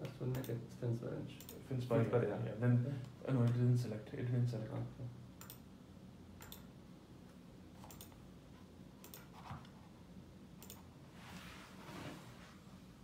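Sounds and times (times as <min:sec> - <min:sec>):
low room hum: 0:00.0 - 0:13.0
computer mouse clicks: 0:00.3 - 0:00.6, 0:01.4 - 0:01.6, 0:05.4 - 0:05.7, 0:06.4 - 0:06.7, 0:07.8 - 0:08.2, 0:09.0 - 0:09.8, 0:10.6 - 0:10.9
soft rustle: 0:11.1 - 0:12.8.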